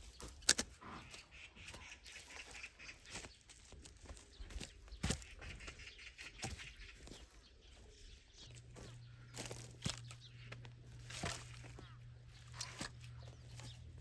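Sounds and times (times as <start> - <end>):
wooden logs knocking together: 8.6 - 14.0.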